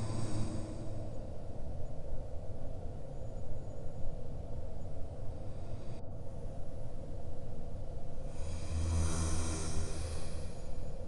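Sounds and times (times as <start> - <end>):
dragon breathing and snoring: 8.4 - 10.7.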